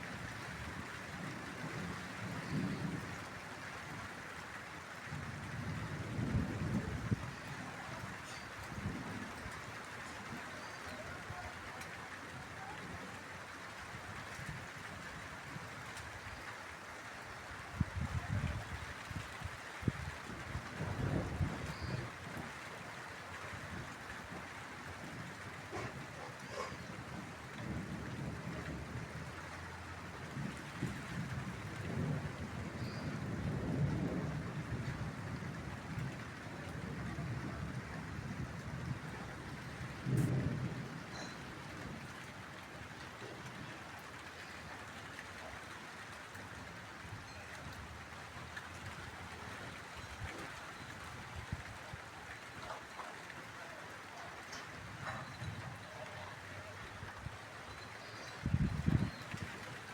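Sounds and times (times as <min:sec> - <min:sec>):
light rain falling: 0:00.0 - 0:59.9
low rolling thunder: 0:05.1 - 0:10.5, 0:17.8 - 0:22.6, 0:23.6 - 0:43.7.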